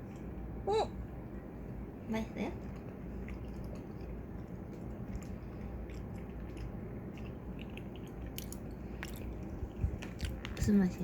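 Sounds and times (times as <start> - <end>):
low steady hum: 0.0 - 11.0
wet chewing squishes: 2.5 - 11.0.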